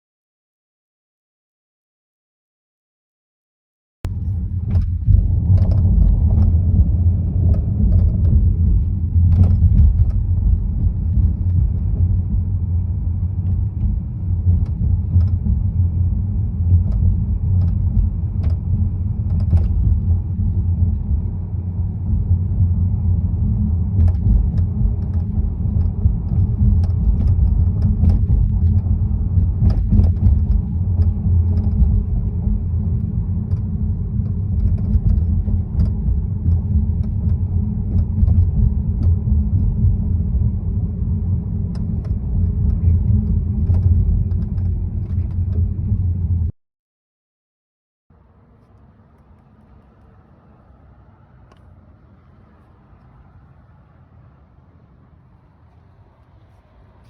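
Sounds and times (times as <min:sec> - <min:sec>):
sharp rattles and knocks: 0:04.1 - 0:21.4, 0:22.0 - 0:40.5, 0:41.6 - 0:46.3
car road rumble: 0:04.1 - 0:46.5, 0:48.1 - 0:57.0.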